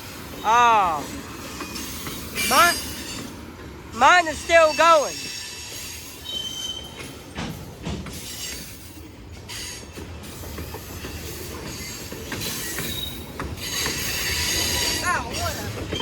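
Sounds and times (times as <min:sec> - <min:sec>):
train cars rumbling past: 0:00.0 - 0:16.0
wheel squeal: 0:05.1 - 0:07.1, 0:11.2 - 0:15.1.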